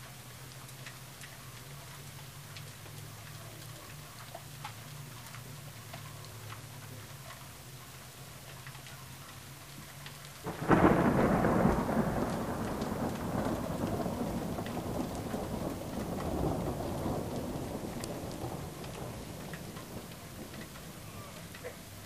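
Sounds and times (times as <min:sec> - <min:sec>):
thunder crack and rumble: 0:10.4 - 0:22.0.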